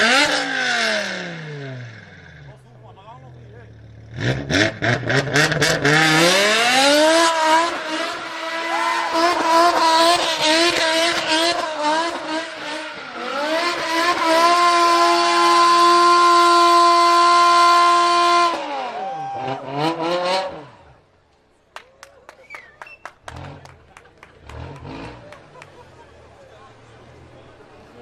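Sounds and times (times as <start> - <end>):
car engine revving: 0.0 - 21.2, 23.1 - 28.0.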